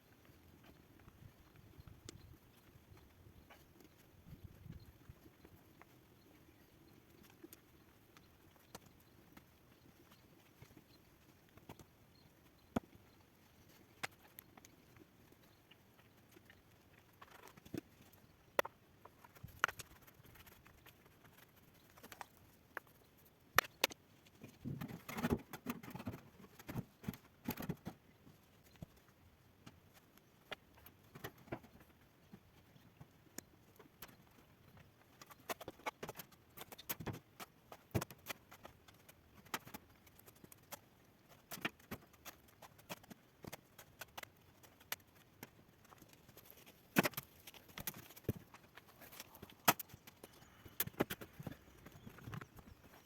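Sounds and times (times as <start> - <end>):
rustling: 37.7 - 53.0.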